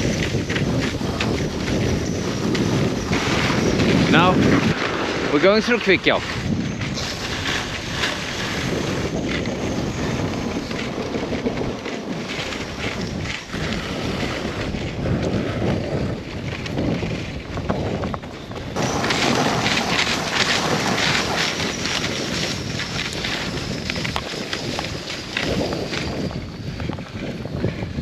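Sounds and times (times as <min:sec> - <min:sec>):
wind buffeting microphone: 0:00.0 - 0:28.0.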